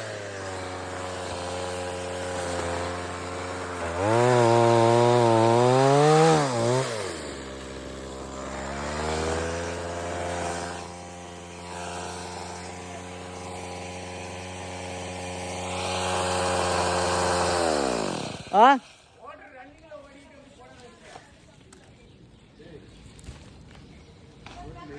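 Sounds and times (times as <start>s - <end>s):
chainsaw engine revving: 0.0s - 19.2s.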